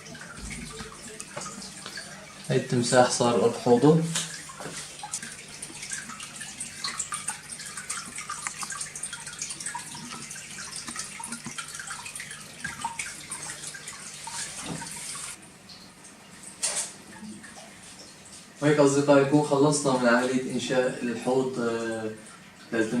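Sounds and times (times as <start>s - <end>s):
water trickling and splashing: 0.0s - 19.1s
faint pump hum: 0.0s - 23.0s.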